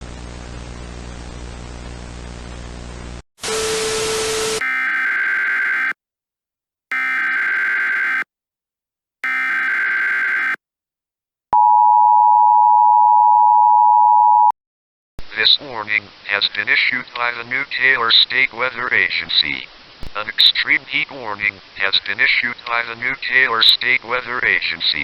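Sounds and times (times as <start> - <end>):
loud static burst with tone: 0.0 - 4.6, 15.2 - 23.7.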